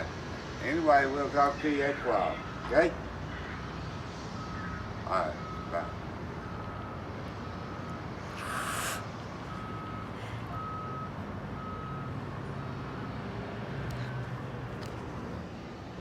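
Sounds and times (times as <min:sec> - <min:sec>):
low engine hum: 0:04.1 - 0:16.0
reversing alarm beeping: 0:04.4 - 0:08.8, 0:09.4 - 0:13.1
short hiss: 0:08.3 - 0:09.1.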